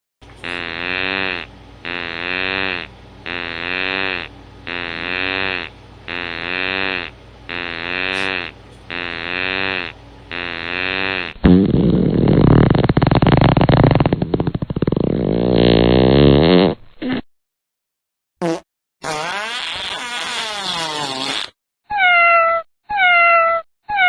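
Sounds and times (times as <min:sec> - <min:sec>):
low drawn-out pitched call: 0:00.4 - 0:11.4.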